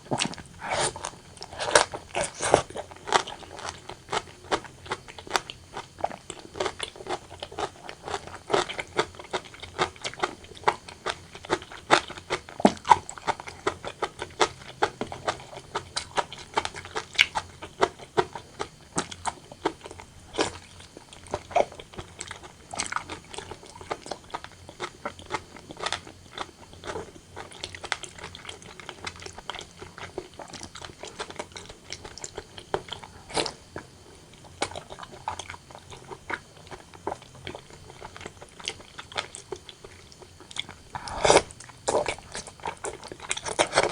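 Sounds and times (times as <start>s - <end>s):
wet sticky chewing and smacking: 0.0s - 43.9s
mouth clicks and bites: 40.6s - 42.6s.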